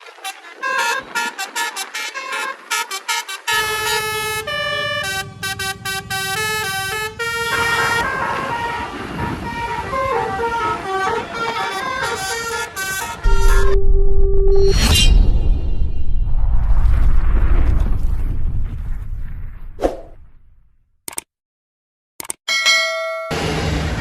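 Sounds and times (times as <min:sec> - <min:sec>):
musical bus horn tune: 0:00.0 - 0:14.7
low engine rumble: 0:03.6 - 0:14.7.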